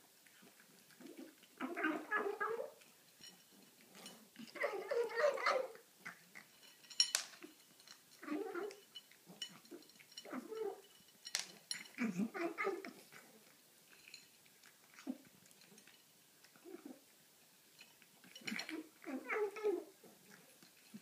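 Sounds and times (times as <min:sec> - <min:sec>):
cat chewing: 0:00.0 - 0:04.6, 0:05.7 - 0:06.8, 0:12.8 - 0:16.8.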